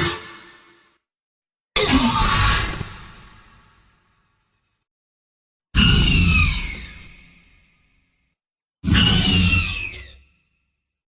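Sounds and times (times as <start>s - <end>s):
shrill animal call: 5.8s - 7.5s, 8.8s - 10.4s.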